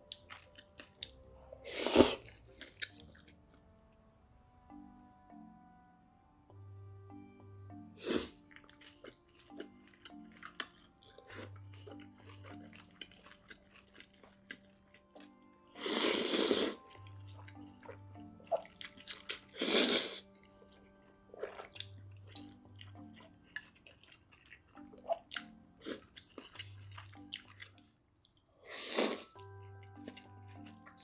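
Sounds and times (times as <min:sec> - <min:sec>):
soft background music: 0:00.0 - 0:31.0
person slurping: 0:01.6 - 0:02.9, 0:08.0 - 0:09.6, 0:15.8 - 0:20.3, 0:28.7 - 0:29.4
chewing clicks: 0:21.7 - 0:28.4.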